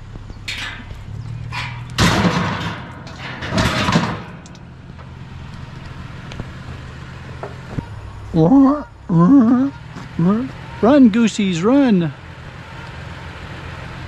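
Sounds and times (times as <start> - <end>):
vehicle engine idling: 0.0 - 14.0
loud clatters: 0.4 - 5.1.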